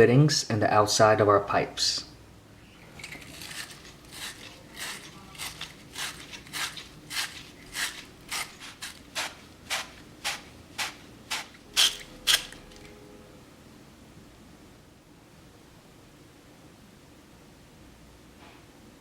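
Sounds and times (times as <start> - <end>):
abrasive rasping on copper pipe: 3.0 - 12.8.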